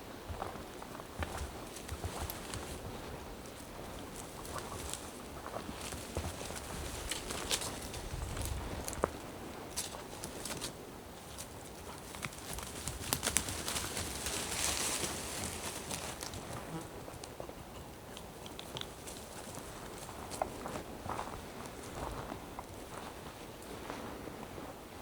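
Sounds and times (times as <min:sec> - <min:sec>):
footsteps on forest floor: 0:00.3 - 0:17.3, 0:18.9 - 0:24.6
undergrowth rustling: 0:00.3 - 0:25.0
twigs snapping: 0:11.4 - 0:16.6, 0:18.1 - 0:20.6.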